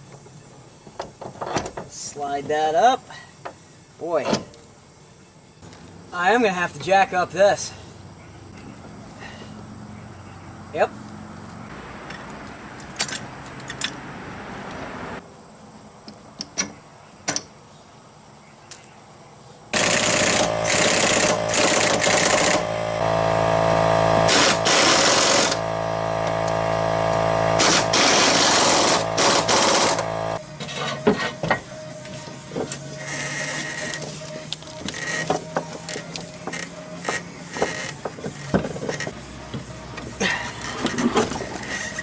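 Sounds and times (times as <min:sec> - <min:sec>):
impact wrench hammering: 0:19.8 - 0:23.1, 0:24.0 - 0:25.6, 0:26.2 - 0:30.4.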